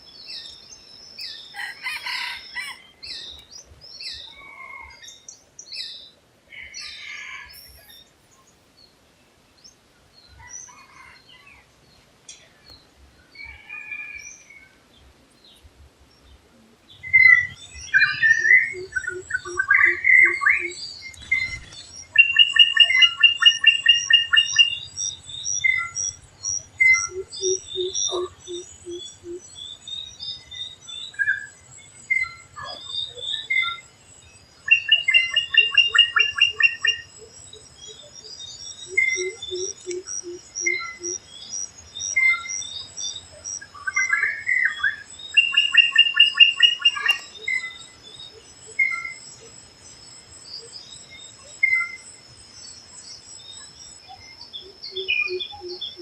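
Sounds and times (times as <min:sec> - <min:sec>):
bird chirps: 0:00.0 - 0:08.9, 0:12.3 - 0:56.0
steady high insect-like tone: 0:07.2 - 0:08.1, 0:17.1 - 0:56.0
bird rapid trill: 0:17.1 - 0:25.0.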